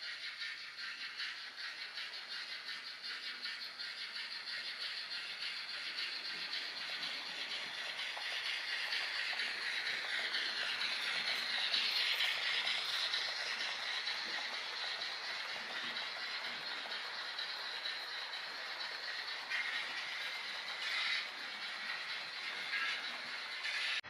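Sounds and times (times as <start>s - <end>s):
model train wheels rattling: 0.0s - 24.0s.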